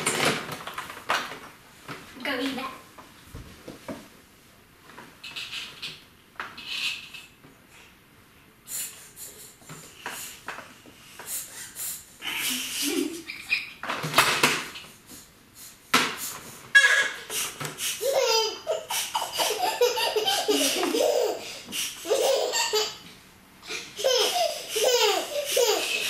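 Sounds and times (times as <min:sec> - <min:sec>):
child laughing: 0:12.2 - 0:13.8, 0:17.9 - 0:23.0, 0:23.6 - 0:26.0.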